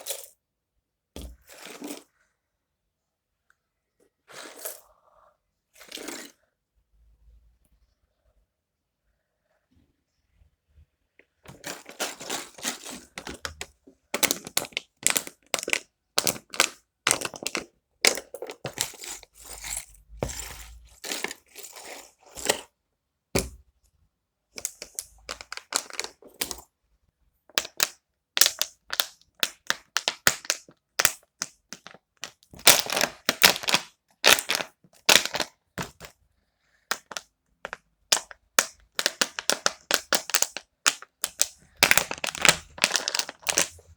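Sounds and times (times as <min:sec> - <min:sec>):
crackling and clicking of handling: 0:11.2 - 0:22.7, 0:24.6 - 0:26.7, 0:27.5 - 0:36.1, 0:36.9 - 0:43.9.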